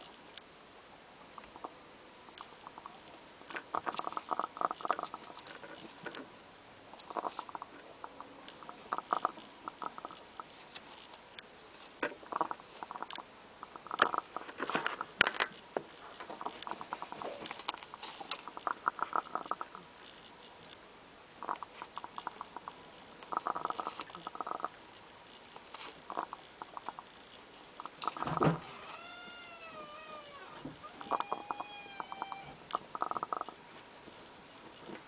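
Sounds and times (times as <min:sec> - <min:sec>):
hen snoring with rattling clicks: 0:02.4 - 0:06.2, 0:07.0 - 0:10.5, 0:12.0 - 0:15.5, 0:18.4 - 0:19.8, 0:21.4 - 0:24.8, 0:26.1 - 0:27.1, 0:30.8 - 0:33.6.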